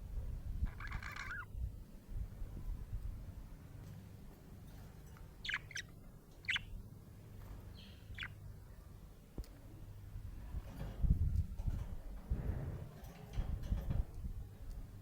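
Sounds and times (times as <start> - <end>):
low background hum: 0.0 - 15.0
budgerigar chirping: 0.7 - 1.5, 5.4 - 6.7, 7.8 - 8.4.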